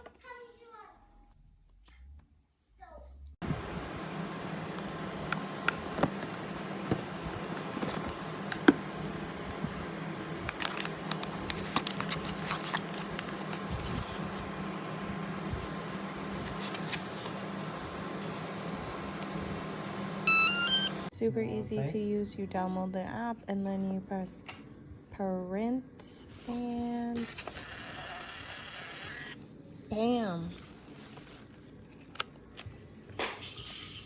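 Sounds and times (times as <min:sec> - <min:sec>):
steady low hum: 0:03.4 - 0:26.9.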